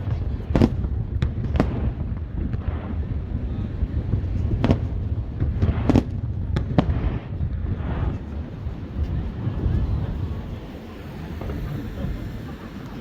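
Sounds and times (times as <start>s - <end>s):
fireworks bangs: 0.0s - 10.6s
wind rumble on microphone: 0.0s - 13.0s.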